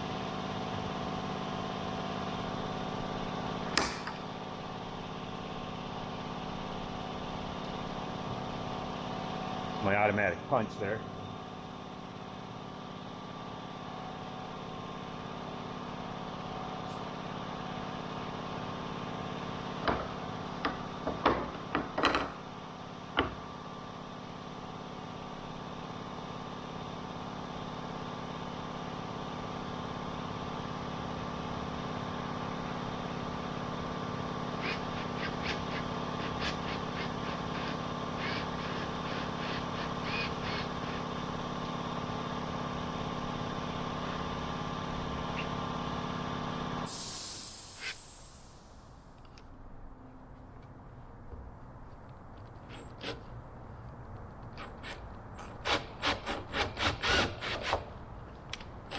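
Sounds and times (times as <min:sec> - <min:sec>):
sharp clicks and knocks: 0:03.7 - 0:04.2
machinery hum: 0:31.1 - 0:50.3.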